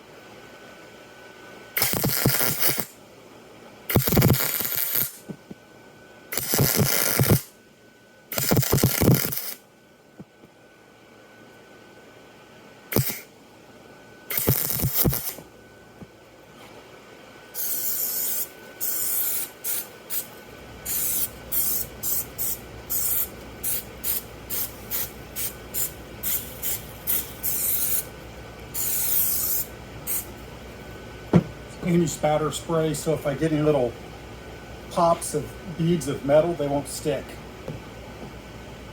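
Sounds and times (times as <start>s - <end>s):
low steady hum: 0.0s - 38.9s
aerosol spray hissing: 14.3s - 15.4s, 17.6s - 20.3s, 20.9s - 28.1s, 28.8s - 30.3s
knocks: 31.3s - 31.5s.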